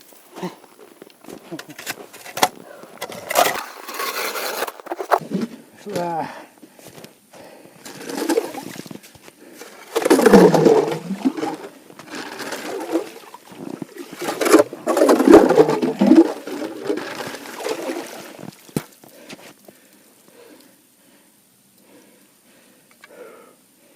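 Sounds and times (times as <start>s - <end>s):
water splashing and sloshing: 7.9s - 19.3s.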